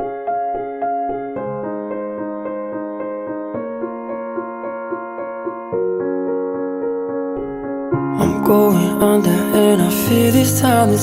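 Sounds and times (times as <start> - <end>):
slow piano ballad: 0.0 - 11.0.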